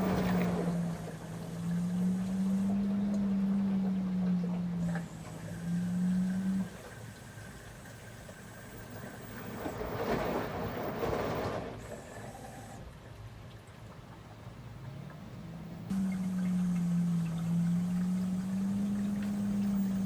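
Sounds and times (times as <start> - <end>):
washing machine motor hum: 0.0 - 20.0
low rumble: 15.0 - 20.0.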